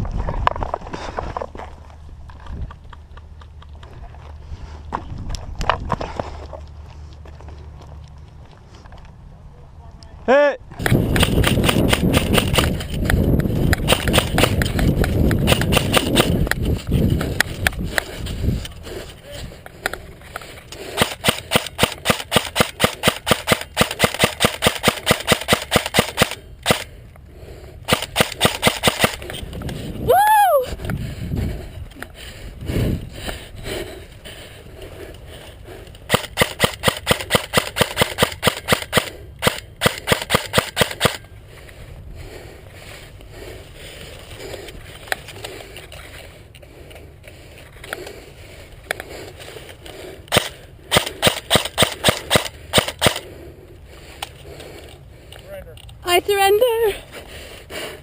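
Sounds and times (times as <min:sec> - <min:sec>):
wind rumble on camera: 0:00.0 - 0:03.2, 0:03.8 - 0:06.7, 0:10.7 - 0:19.6, 0:29.1 - 0:33.9
running footsteps on dry ground: 0:00.0 - 0:09.3
airsoft rifle shots: 0:10.8 - 0:12.8, 0:13.8 - 0:14.8, 0:15.4 - 0:16.4, 0:20.9 - 0:26.9, 0:27.9 - 0:29.2, 0:36.1 - 0:41.2, 0:50.3 - 0:53.2.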